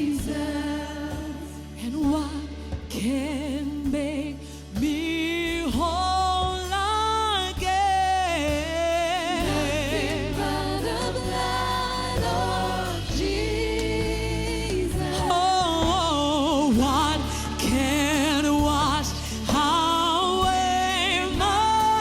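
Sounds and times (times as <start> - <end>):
bass line: 0.0 - 22.0
keyboard: 0.0 - 22.0.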